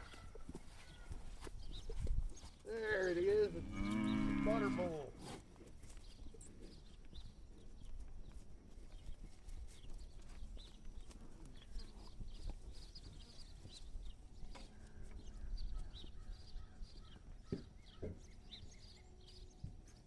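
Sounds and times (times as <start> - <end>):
cattle moving about: 0.0 - 20.0
small birds chirping: 0.0 - 20.0
cattle lowing: 3.4 - 5.5.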